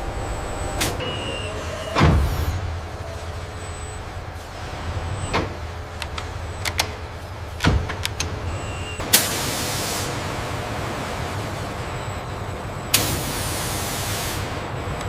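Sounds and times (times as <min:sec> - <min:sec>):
factory machinery hum: 0:00.0 - 0:15.0
hiss: 0:09.1 - 0:10.3, 0:13.0 - 0:14.6.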